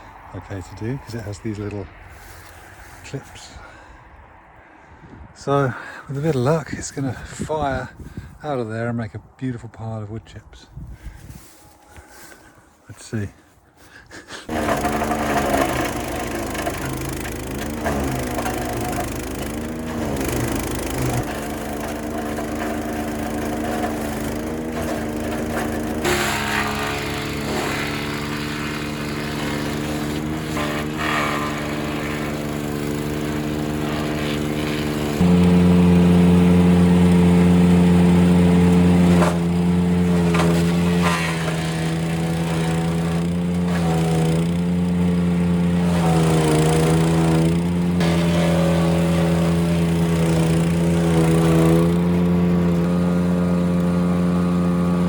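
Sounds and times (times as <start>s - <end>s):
wood chipper engine running: 0.0s - 4.0s, 11.4s - 12.4s, 14.5s - 55.0s
wood cracking and splintering: 14.5s - 32.2s, 38.9s - 45.0s, 45.8s - 52.2s.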